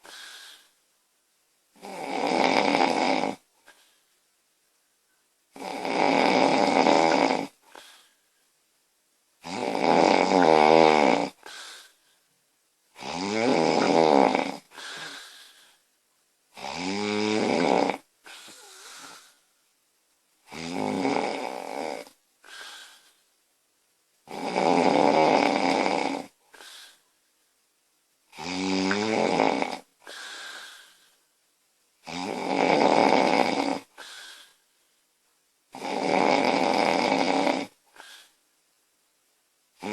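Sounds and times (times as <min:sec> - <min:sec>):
soft breath sound: 0:00.0 - 0:00.8, 0:03.5 - 0:04.3, 0:14.6 - 0:15.9, 0:18.2 - 0:19.6, 0:22.4 - 0:23.4, 0:30.0 - 0:31.3, 0:33.8 - 0:35.1
woman snoring: 0:01.8 - 0:03.8, 0:05.6 - 0:08.0, 0:09.4 - 0:11.9, 0:13.0 - 0:15.6, 0:16.5 - 0:19.4, 0:20.5 - 0:23.0, 0:24.3 - 0:27.0, 0:28.3 - 0:31.0, 0:32.0 - 0:34.6, 0:35.7 - 0:38.3.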